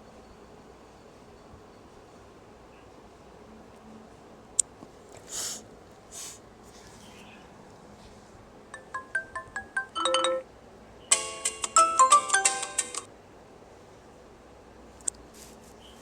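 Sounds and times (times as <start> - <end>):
brief hisses: 5.2 - 6.4
chiming ringtone tune: 8.8 - 10.4, 11.1 - 13.1
louder dense ringtone tune: 8.8 - 10.4, 11.1 - 13.1.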